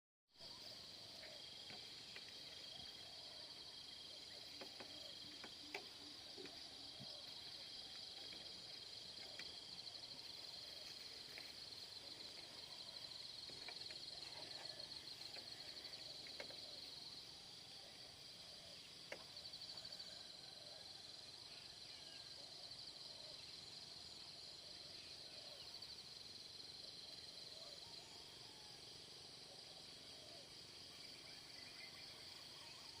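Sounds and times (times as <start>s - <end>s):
insects chirring: 0.4s - 33.0s.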